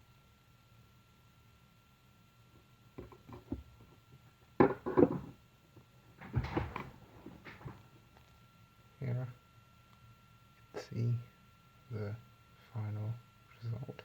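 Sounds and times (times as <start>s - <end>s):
tools knocking and clattering: 4.6s - 5.3s, 6.2s - 7.8s.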